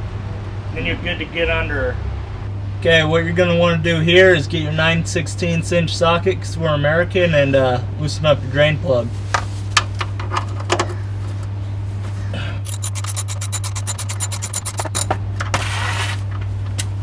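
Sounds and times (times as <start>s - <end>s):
ratchet wrench clicking: 12.6s - 15.2s.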